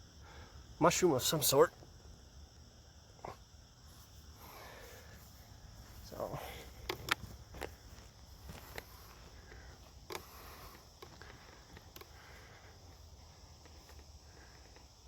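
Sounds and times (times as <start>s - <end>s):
insects chirring: 0.0s - 15.0s
light clicks: 6.8s - 7.7s.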